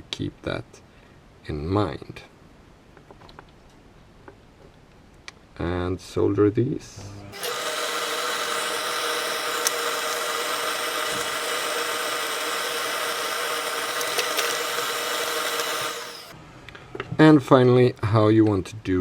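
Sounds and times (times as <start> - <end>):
small motor whirring: 7.3 - 16.4.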